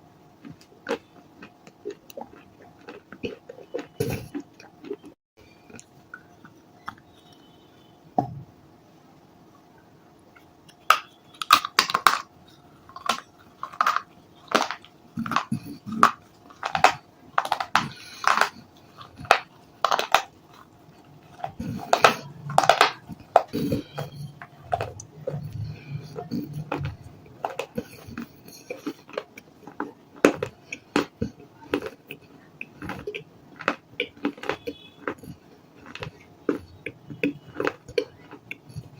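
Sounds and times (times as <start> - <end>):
baked clay crunching: 10.6 - 38.9.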